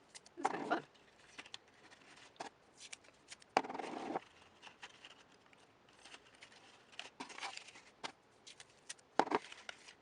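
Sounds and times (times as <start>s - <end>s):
cardboard tubes clicking and tapping: 6.0s - 10.0s.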